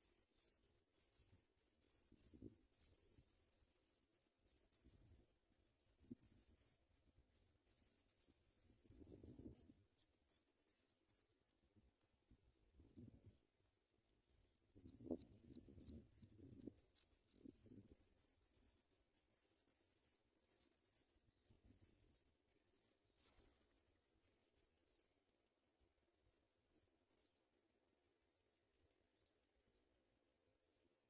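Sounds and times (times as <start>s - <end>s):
nestlings cheeping: 0.0s - 11.2s, 14.3s - 23.0s.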